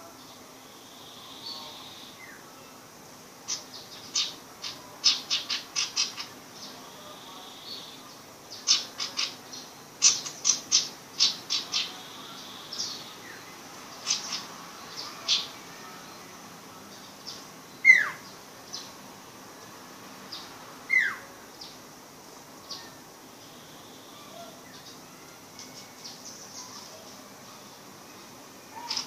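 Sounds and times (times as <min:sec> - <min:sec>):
bird chirping: 0:03.4 - 0:19.0, 0:22.6 - 0:29.0.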